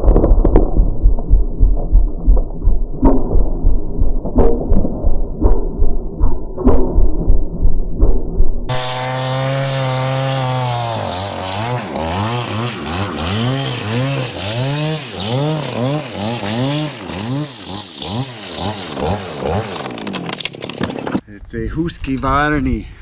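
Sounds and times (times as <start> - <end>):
chainsaw engine revving: 8.7 - 21.2.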